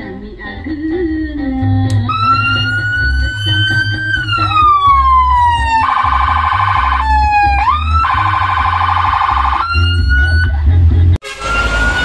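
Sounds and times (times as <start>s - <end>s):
electronic siren tones: 2.1s - 10.6s, 11.3s - 12.0s.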